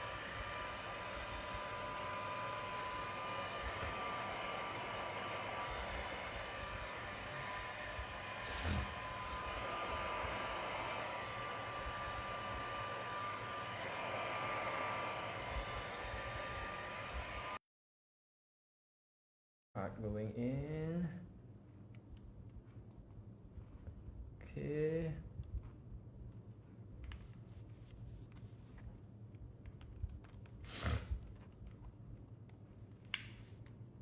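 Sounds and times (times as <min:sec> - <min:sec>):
hot-air blower whine: 0:00.0 - 0:17.6.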